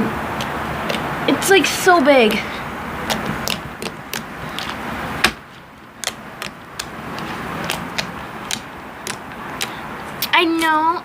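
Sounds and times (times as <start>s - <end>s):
slime squishing: 5.9s - 9.7s.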